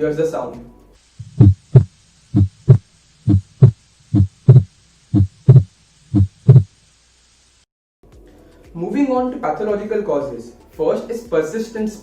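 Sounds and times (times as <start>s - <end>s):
heartbeat lub-dub: 1.2s - 6.7s.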